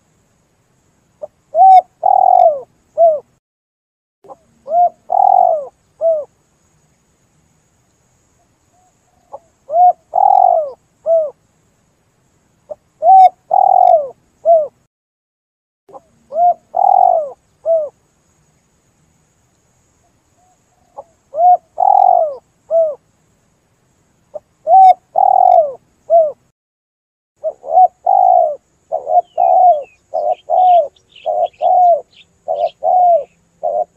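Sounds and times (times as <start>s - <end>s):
dove cooing: 1.2s - 3.3s, 4.3s - 6.3s, 8.8s - 11.4s, 12.7s - 14.8s, 15.9s - 18.0s, 20.8s - 23.0s, 24.3s - 26.4s, 27.4s - 33.9s
faint high bird chirps: 1.2s - 3.4s, 4.3s - 7.1s, 8.3s - 11.4s, 12.6s - 14.8s, 15.9s - 18.7s, 20.0s - 23.0s, 24.2s - 26.5s, 27.4s - 33.9s.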